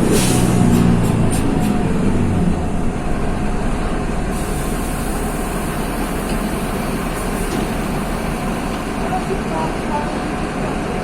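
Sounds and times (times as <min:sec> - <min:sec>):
bus diesel engine droning: 0:00.0 - 0:11.0.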